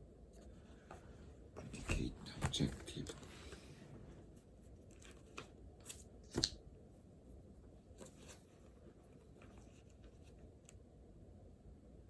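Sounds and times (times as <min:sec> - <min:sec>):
faint room hiss: 0:00.0 - 0:12.0
pen and paper clicks and rustles: 0:04.8 - 0:06.6.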